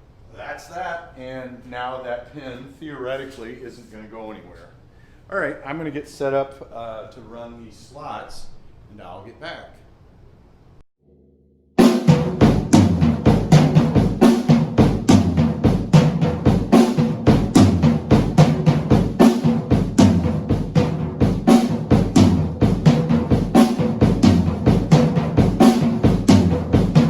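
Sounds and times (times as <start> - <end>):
drum kit playing fast: 11.8 - 27.0.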